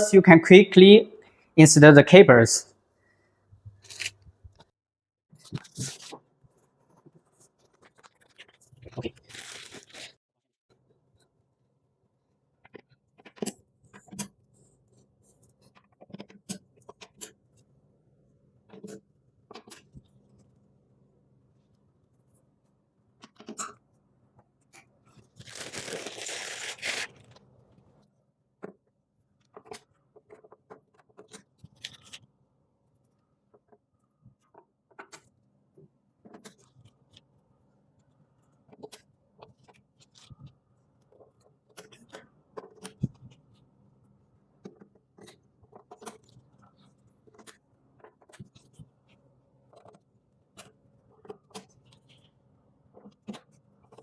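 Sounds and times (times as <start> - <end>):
ripping sound: 25.5 - 27.2.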